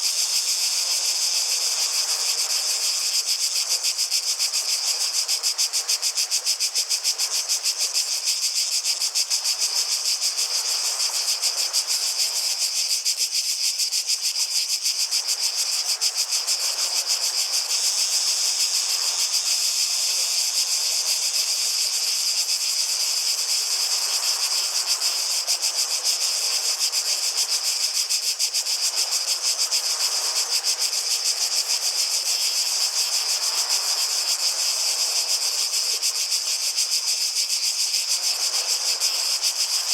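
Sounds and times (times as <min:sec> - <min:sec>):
cicadas singing: 0:00.0 - 0:39.9.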